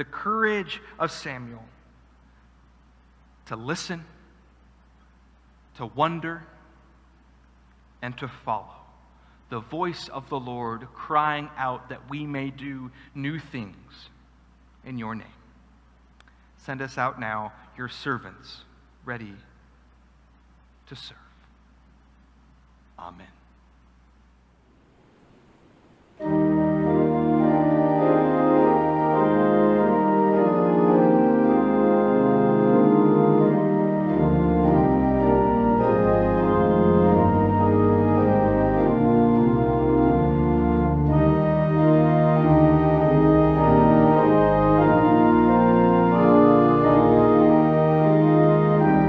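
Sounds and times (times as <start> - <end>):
organ chords: 24.6 - 49.0.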